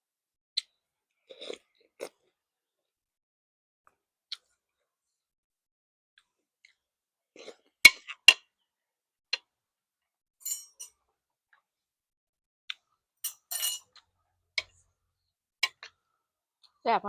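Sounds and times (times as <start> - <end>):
utensils clinking on a bowl: 10.4 - 11.0, 13.2 - 14.0.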